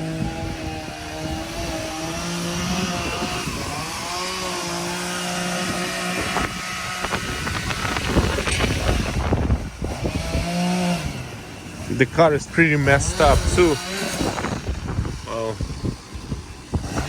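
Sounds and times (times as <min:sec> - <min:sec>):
motor running: 0:00.0 - 0:17.0
crackling and clattering: 0:06.2 - 0:09.8.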